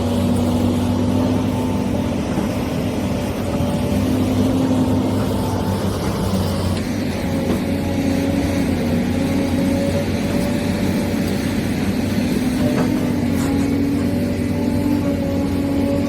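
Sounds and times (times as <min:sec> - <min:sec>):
electric motors whirring: 0:00.0 - 0:16.0.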